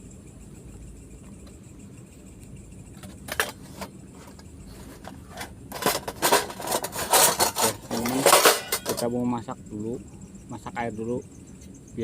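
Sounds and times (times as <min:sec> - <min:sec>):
metal cookware clinking: 0:05.8 - 0:09.1.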